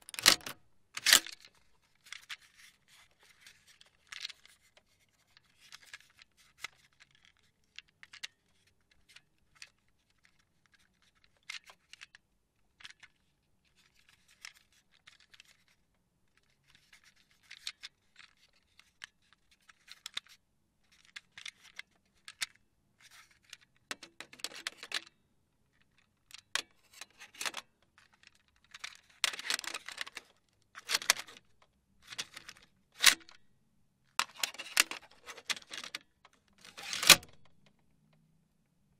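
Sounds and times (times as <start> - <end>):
cassette deck clicks and clacks: 0.0 - 1.4, 34.2 - 37.5.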